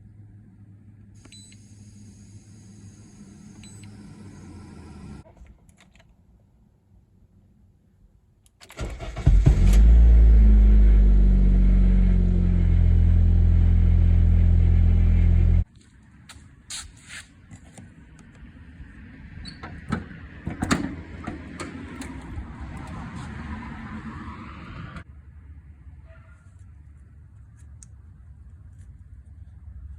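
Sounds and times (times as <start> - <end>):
car engine starting and idling: 8.6 - 15.7.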